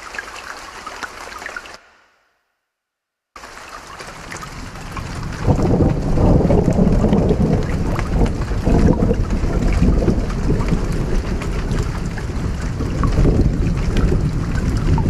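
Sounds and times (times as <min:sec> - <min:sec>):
creek water splashing and trickling: 0:00.0 - 0:01.9, 0:03.4 - 0:15.0
thunder rumbling: 0:04.1 - 0:15.0.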